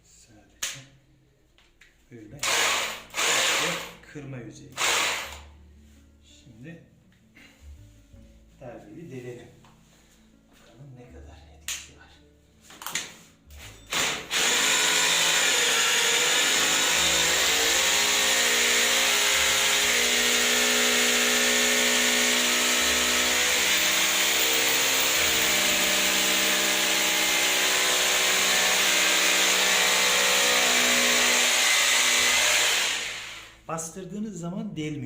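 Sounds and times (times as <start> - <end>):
rotary hammer drilling: 2.4 - 4.0, 4.8 - 5.4, 13.9 - 33.6.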